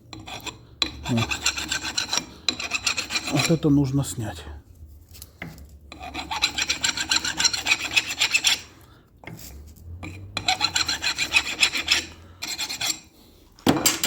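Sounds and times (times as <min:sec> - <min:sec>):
file rasping on steel: 0:00.1 - 0:03.7, 0:05.9 - 0:13.1.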